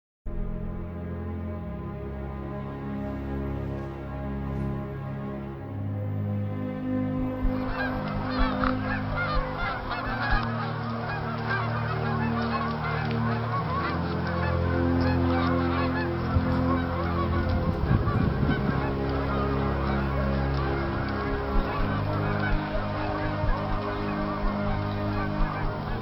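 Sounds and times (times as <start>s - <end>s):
steady low drone: 0.3s - 26.0s
flock of birds calling: 6.7s - 26.0s.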